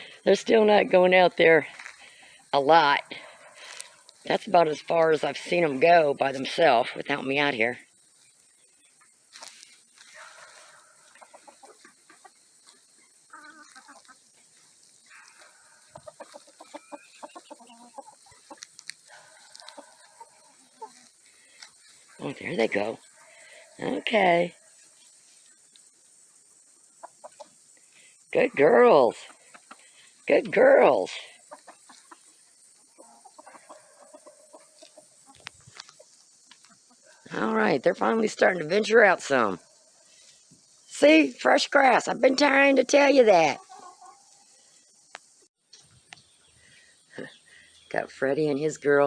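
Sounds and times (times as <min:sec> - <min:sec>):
hens clucking: 0:00.0 - 0:45.8
chickens clucking softly: 0:10.2 - 0:23.0, 0:26.4 - 0:27.7, 0:31.3 - 0:37.4, 0:43.4 - 0:44.6.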